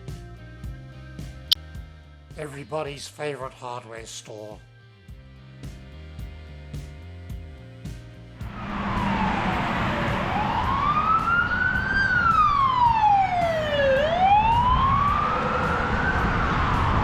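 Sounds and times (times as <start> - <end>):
road traffic: 8.4 - 17.0
emergency siren wailing: 8.5 - 17.0.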